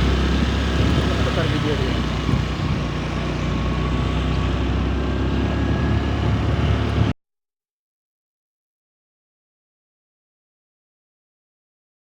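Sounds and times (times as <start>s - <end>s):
scooter engine running: 0.0s - 7.1s.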